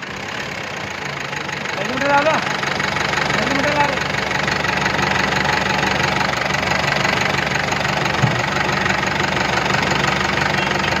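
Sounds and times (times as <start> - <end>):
diesel engine idling with knocking: 0.0 - 11.0
short low thump: 8.2 - 8.5.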